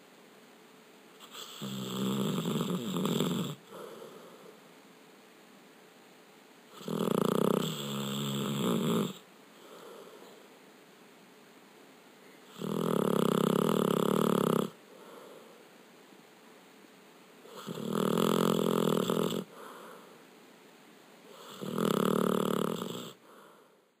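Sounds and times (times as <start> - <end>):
dog snoring: 1.2 - 4.6, 6.7 - 10.4, 12.4 - 15.6, 17.4 - 20.1, 21.3 - 23.7
dog soft breaths: 3.6 - 4.7, 19.2 - 20.2.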